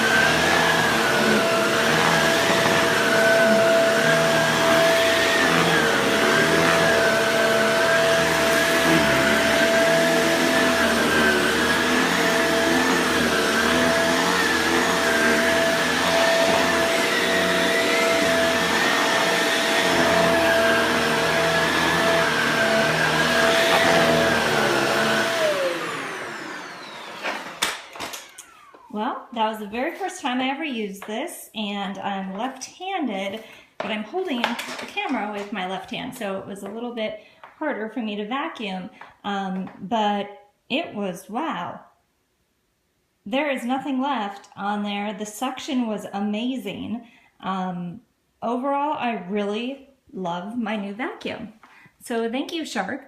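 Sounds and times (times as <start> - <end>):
vacuum cleaner running over rug: 0.0 - 29.0.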